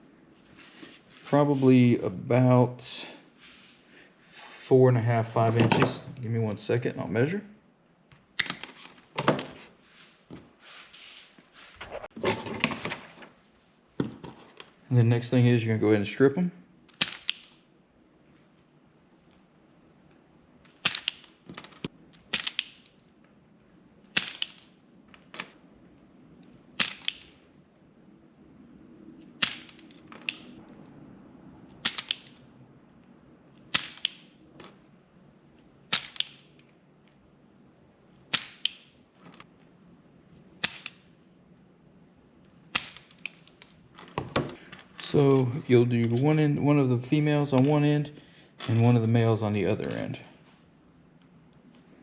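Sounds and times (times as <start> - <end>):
wire stripper snapping shut: 22.3 - 22.9.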